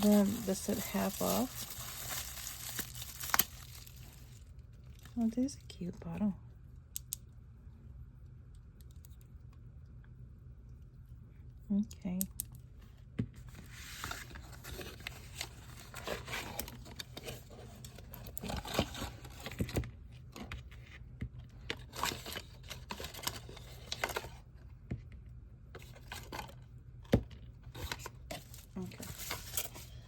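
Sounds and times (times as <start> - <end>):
packaging crinkling and tearing: 0.0 - 5.2.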